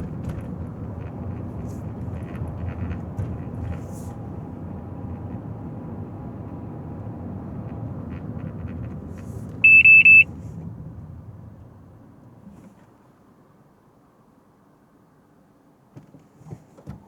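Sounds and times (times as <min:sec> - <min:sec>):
car road and engine rumble: 0:00.0 - 0:17.0
high electronic beeps: 0:09.6 - 0:10.2.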